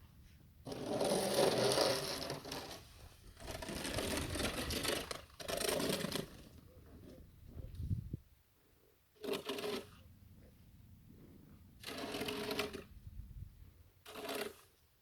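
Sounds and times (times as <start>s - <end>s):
snow shovel scraping: 0.7s - 6.5s, 11.8s - 12.9s, 14.0s - 14.7s.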